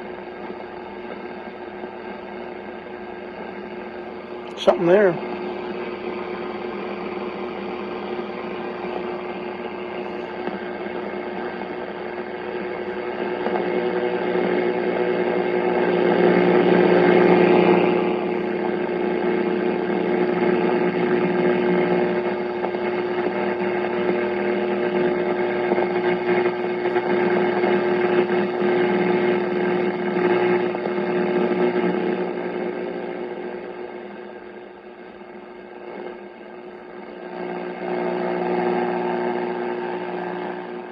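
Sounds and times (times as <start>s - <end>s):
radio static hiss: 4.5s - 5.8s, 8.1s - 20.8s.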